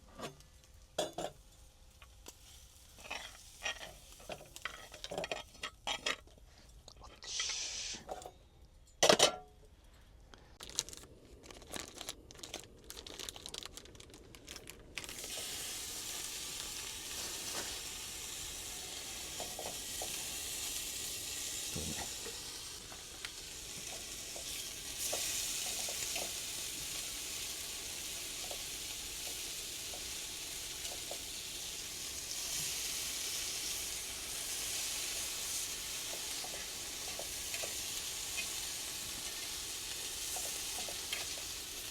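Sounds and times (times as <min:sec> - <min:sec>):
food sizzling in a hot pan: 0:00.9 - 0:06.0, 0:07.3 - 0:08.0, 0:15.0 - 0:41.9.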